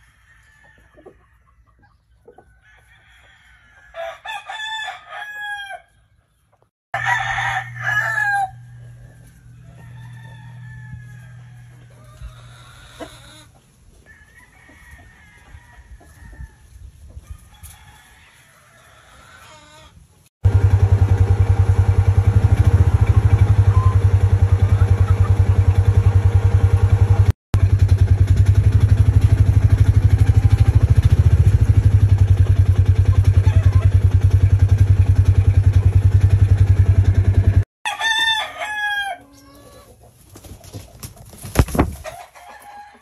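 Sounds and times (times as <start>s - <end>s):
rooster crowing: 0.0s - 1.6s, 2.5s - 5.9s, 6.9s - 13.4s, 14.1s - 19.9s, 37.9s - 39.9s, 42.0s - 43.0s
small engine running: 20.4s - 37.6s.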